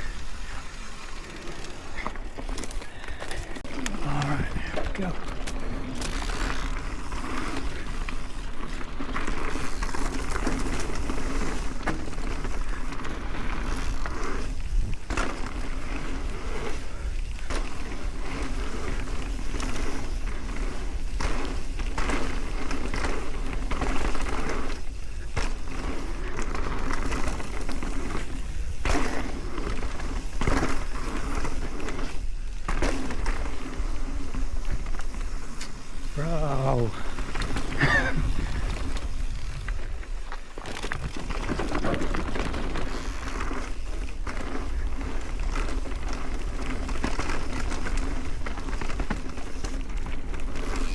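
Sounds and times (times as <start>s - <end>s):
bike knocking and rattling: 0.0s - 50.9s
bike tyres rolling over dirt: 0.0s - 50.9s
wind rumbling on microphone: 36.8s - 43.2s.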